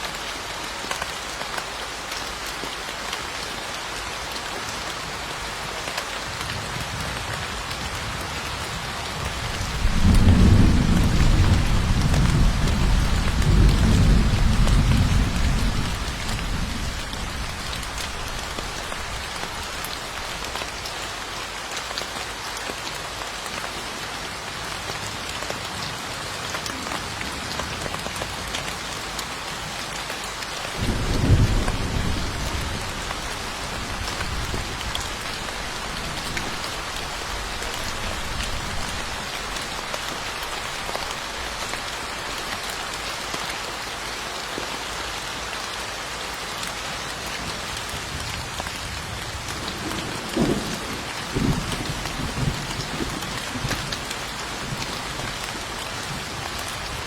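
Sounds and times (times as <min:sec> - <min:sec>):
heavy rain falling: 0:00.0 - 0:57.0
thunder rumbling: 0:09.2 - 0:19.2, 0:30.8 - 0:37.0.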